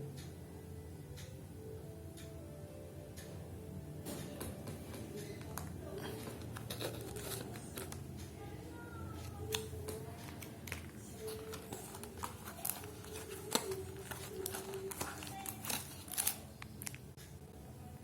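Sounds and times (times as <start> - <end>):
packaging crinkling: 6.0 - 8.0, 9.4 - 17.0.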